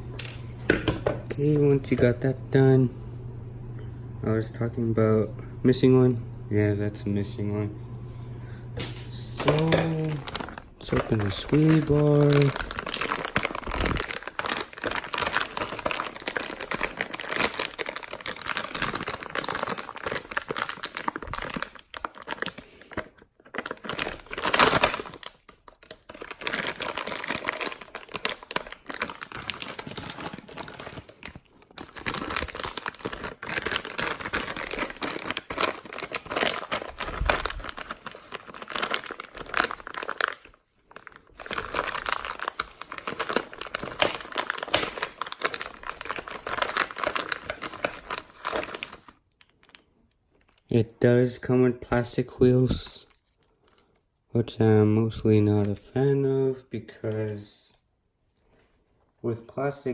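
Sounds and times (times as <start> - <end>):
packaging crinkling and tearing: 8.8 - 50.7.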